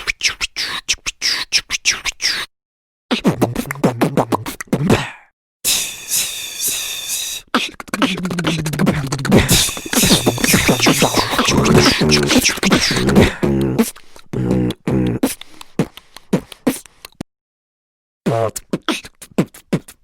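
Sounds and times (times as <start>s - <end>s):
beatboxing mouth clicks and pops: 0.0s - 2.5s, 3.1s - 5.3s, 6.1s - 17.2s, 18.3s - 20.0s
short pitched vocal tones: 5.7s - 15.4s.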